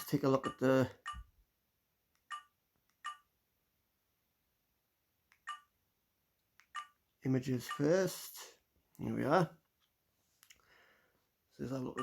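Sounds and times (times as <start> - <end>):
mobile phone keypad beeps: 0.4 - 1.3, 2.3 - 3.3, 5.4 - 5.7, 6.7 - 7.0, 7.6 - 7.9.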